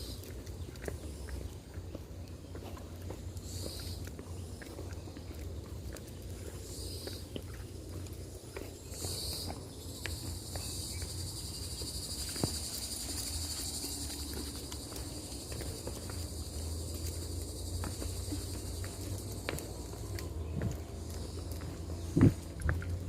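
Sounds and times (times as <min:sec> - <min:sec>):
insects buzzing: 0:00.0 - 0:23.0.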